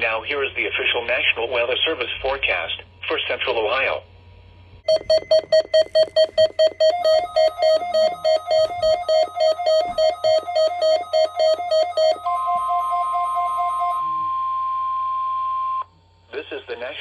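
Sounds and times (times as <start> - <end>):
rapid electronic beeping: 4.8 - 14.0
steady alarm tone: 4.8 - 15.9.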